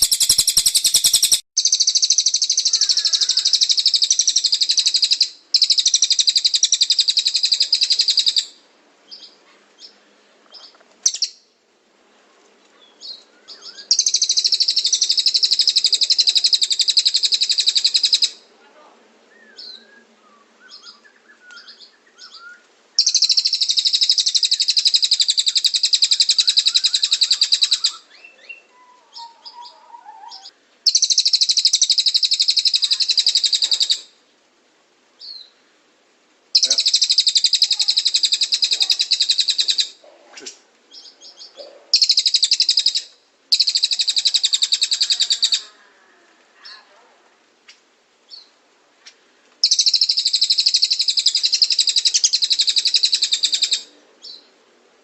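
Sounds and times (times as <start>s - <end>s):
bird high-pitched trills: 0.0s - 8.4s, 49.6s - 54.4s.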